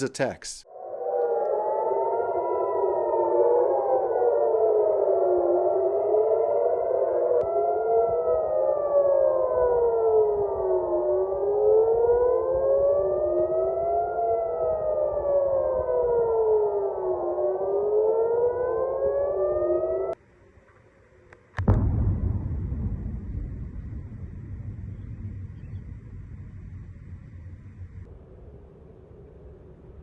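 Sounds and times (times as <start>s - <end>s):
air-raid sirens wailing: 0.7s - 20.2s.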